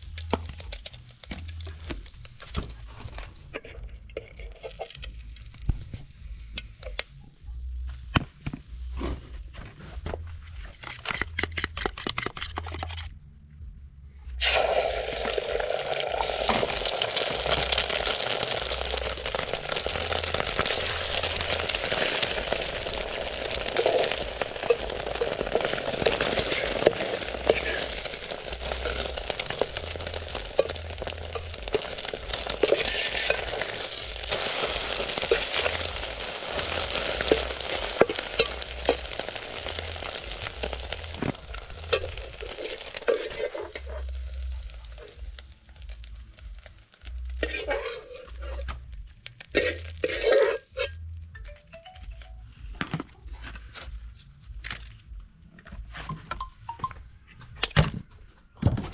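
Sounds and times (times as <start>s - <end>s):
food sizzling in hot oil: 14.4s - 48.4s, 49.4s - 50.9s.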